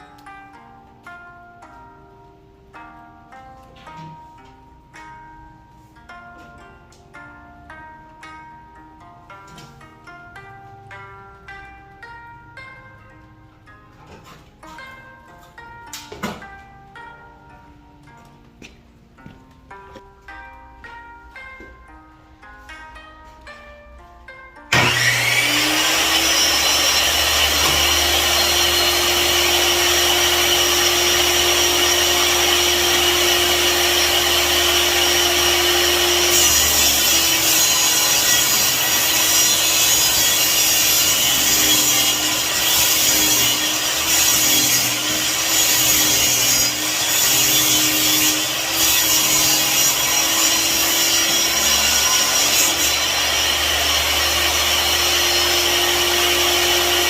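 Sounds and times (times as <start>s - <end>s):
electric power saw cutting wood: 24.7s - 57.0s.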